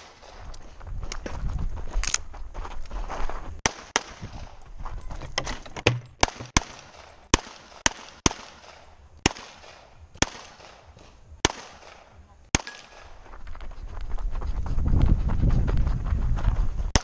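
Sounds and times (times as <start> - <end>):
handgun shots with echo: 3.6 - 4.5, 5.8 - 13.2.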